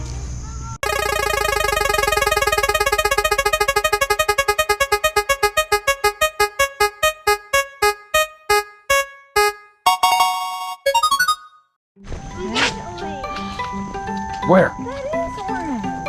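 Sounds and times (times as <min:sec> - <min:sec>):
electronic spinning wheel effect: 0:00.8 - 0:10.2
short held electronic tone: 0:00.8 - 0:11.6.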